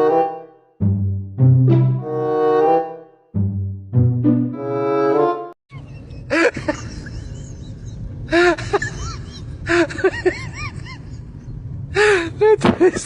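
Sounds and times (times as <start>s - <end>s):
orchestral string music: 0.0s - 5.6s.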